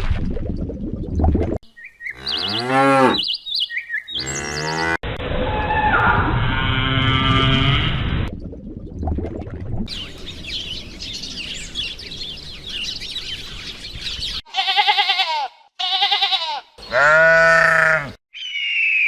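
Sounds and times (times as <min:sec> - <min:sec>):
small birds chirping: 0:01.6 - 0:04.9, 0:09.9 - 0:14.5
goat bleating: 0:14.5 - 0:18.2.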